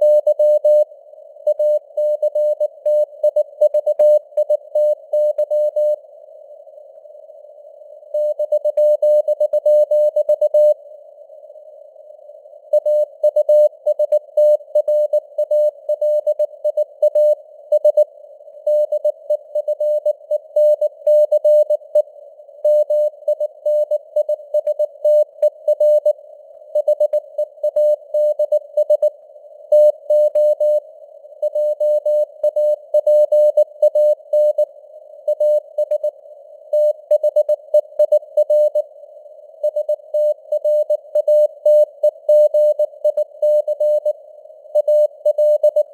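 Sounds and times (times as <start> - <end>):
faint radio noise hiss: 0.0 - 45.9.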